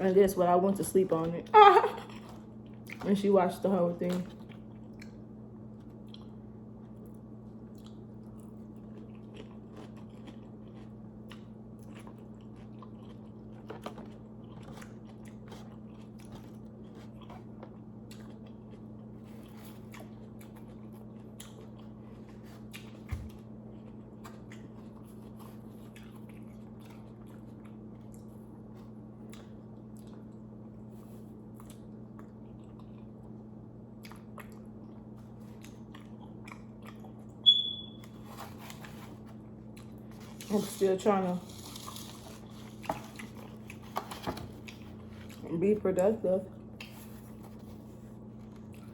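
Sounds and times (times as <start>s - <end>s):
steady low hum: 0.0s - 48.9s
biting and chewing pizza: 1.0s - 45.8s, 46.4s - 48.9s.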